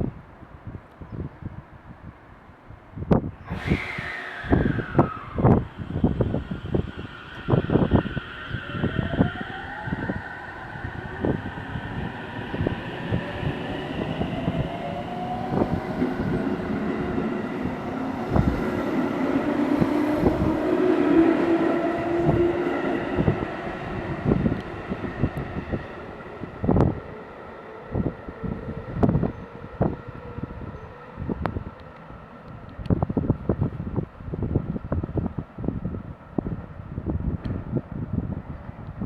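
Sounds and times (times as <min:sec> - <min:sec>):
whining gliding tones: 0:03.4 - 0:33.5.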